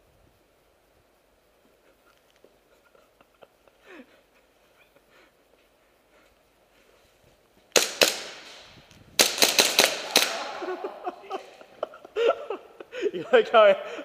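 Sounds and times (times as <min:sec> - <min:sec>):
airsoft gun shots: 0:07.8 - 0:10.8.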